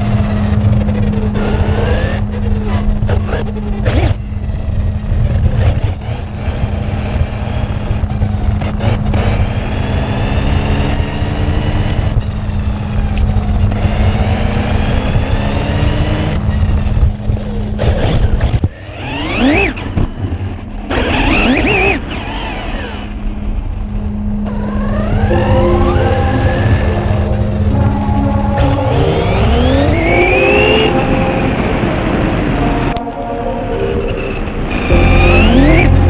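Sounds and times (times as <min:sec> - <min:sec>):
motor whines: 0:00.0 - 0:36.0
vehicle rumble and hum: 0:00.0 - 0:36.0.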